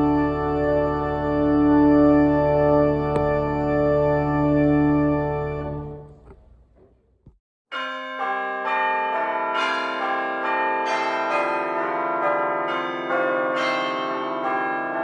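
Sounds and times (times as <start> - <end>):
church bells ringing: 0.0 - 6.1, 7.7 - 15.0
pipe organ chord: 0.0 - 6.1.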